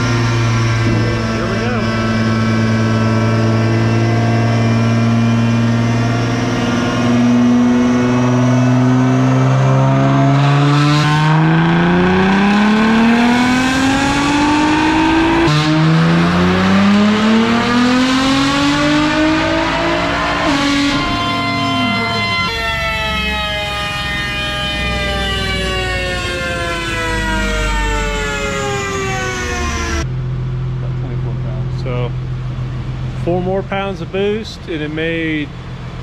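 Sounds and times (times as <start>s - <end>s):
car engine revving at full throttle: 0.0s - 36.0s.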